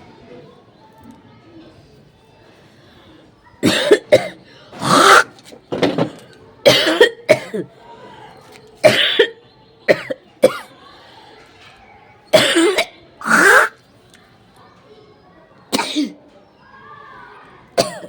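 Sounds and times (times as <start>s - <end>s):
person coughing and hawking: 3.6s - 5.4s, 6.7s - 7.7s, 8.8s - 10.6s, 12.4s - 13.8s, 17.8s - 18.0s.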